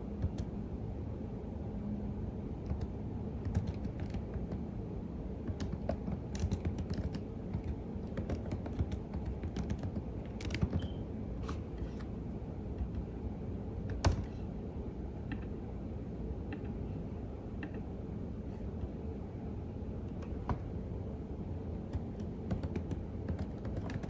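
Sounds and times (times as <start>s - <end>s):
keyboard typing clicks: 0.2s - 0.5s, 2.6s - 4.6s, 5.4s - 11.0s, 21.9s - 24.0s.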